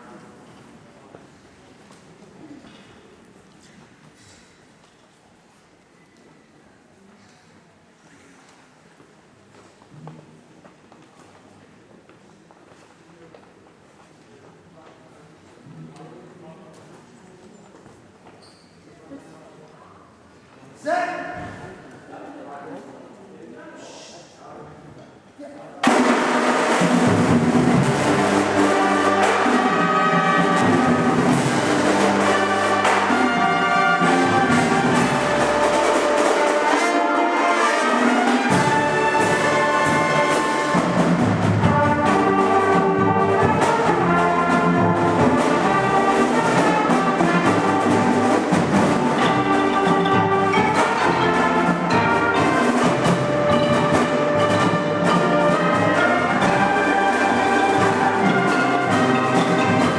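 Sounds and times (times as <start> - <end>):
brass section playing: 25.8 - 59.9
drum line: 25.8 - 59.9.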